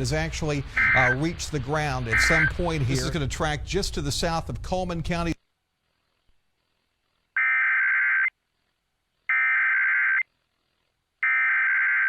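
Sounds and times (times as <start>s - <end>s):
digital data tone bursts: 0.8s - 1.2s, 2.1s - 3.1s.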